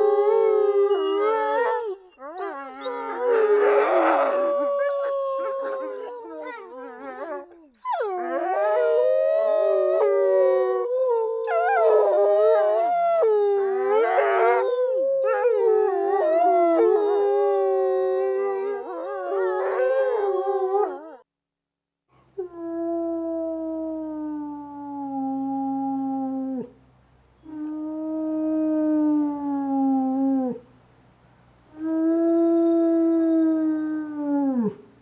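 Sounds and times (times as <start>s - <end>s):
dogs howling: 0.0s - 10.9s.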